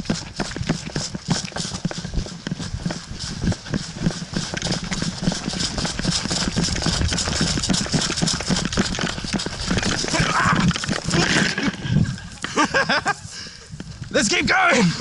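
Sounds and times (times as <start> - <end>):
gear rattling and knocking: 0.0 - 11.7
quick running footsteps: 0.0 - 14.1.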